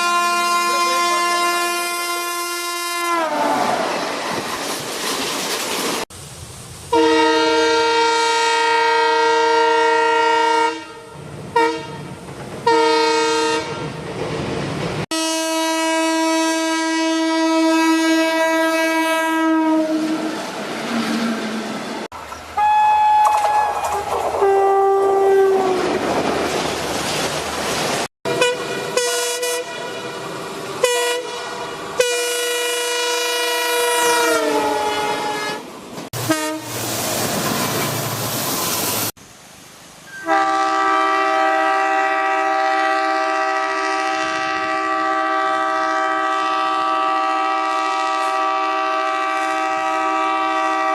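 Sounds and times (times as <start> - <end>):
locomotive horn blasts: 0.0 - 3.8, 6.9 - 14.0, 15.1 - 20.3, 22.6 - 25.9, 28.2 - 36.8, 40.1 - 50.9
trains rumbling over rails: 0.0 - 50.9.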